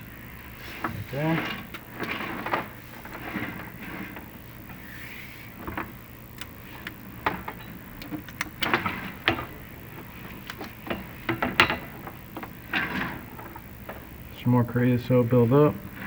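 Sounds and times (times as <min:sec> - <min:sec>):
steady low hum: 0:00.0 - 0:16.0
push rods knocking and scraping: 0:00.6 - 0:14.3.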